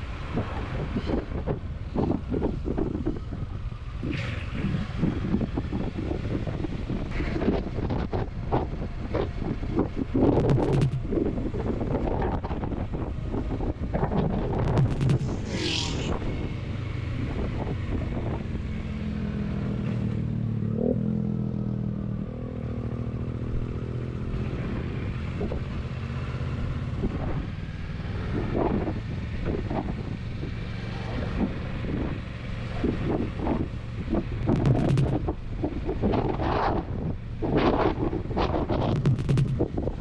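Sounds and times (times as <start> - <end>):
wind noise on microphone: 0.0 - 19.8, 26.4 - 40.0
motorcycle engine running: 10.4 - 11.5, 14.6 - 17.9, 33.7 - 35.6, 38.9 - 40.0.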